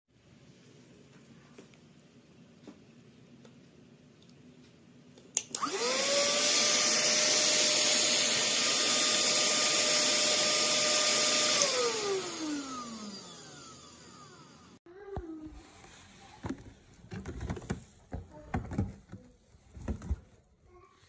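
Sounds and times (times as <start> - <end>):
vacuum cleaner switch click: 5.4 - 5.9, 11.4 - 11.9
mini vacuum cleaner motor whine: 5.6 - 14.8.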